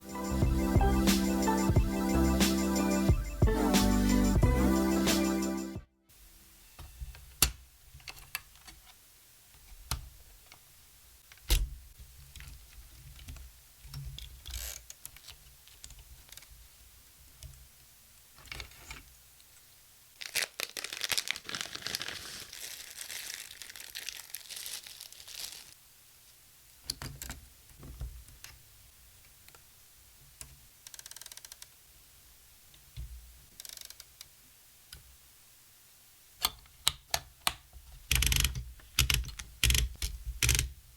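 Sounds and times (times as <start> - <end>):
rustling: 20.2 - 25.8.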